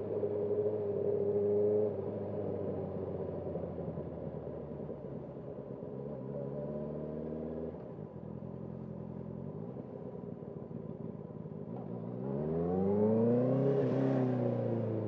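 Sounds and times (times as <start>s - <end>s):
motorcycle engine revving: 12.2s - 15.0s.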